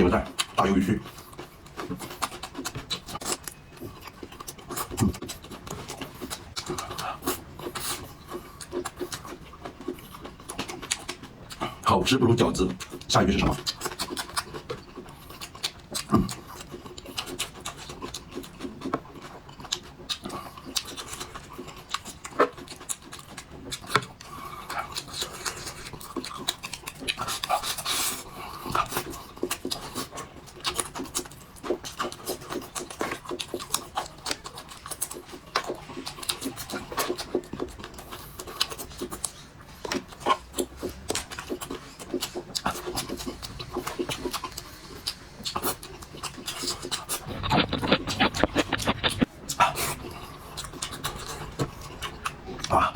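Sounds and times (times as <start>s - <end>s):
wet chewing and smacking: 0.0s - 52.9s
crunching: 29.0s - 52.8s.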